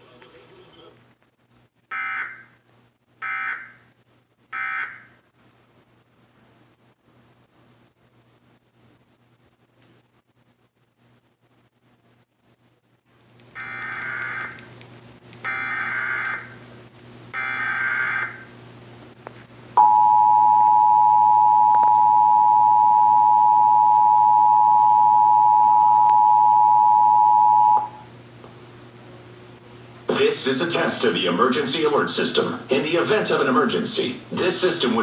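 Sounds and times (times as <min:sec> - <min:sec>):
two-tone attention signal: 0:19.8 - 0:28.0.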